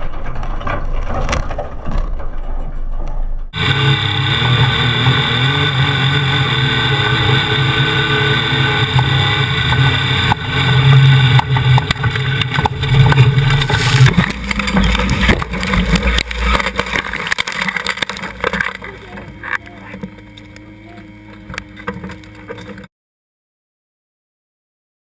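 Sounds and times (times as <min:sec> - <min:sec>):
boat engine running: 0:03.4 - 0:22.9.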